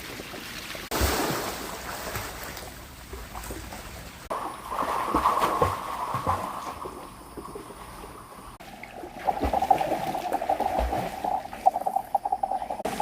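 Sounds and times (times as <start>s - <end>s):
rush of water: 0.0s - 7.3s, 12.8s - 13.0s
pool water splashing: 0.0s - 13.0s.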